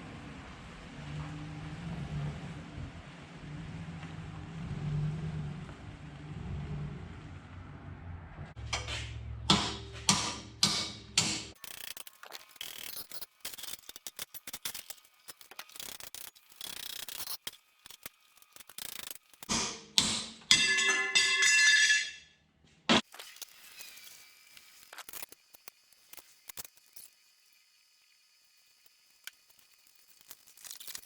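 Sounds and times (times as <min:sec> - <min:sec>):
steel pieces clanking: 0:08.7 - 0:22.4
ringing metal scrape: 0:20.5 - 0:22.3.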